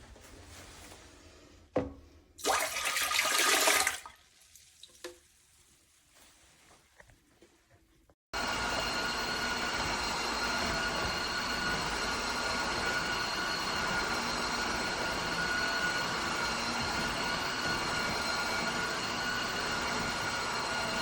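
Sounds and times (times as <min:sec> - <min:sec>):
vacuum cleaner running: 0:02.4 - 0:04.0, 0:08.4 - 0:21.0.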